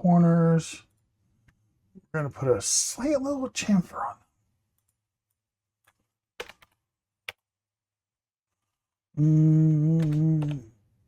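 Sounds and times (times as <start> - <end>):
keyboard and mouse clicks: 5.8 - 7.5, 10.0 - 10.7.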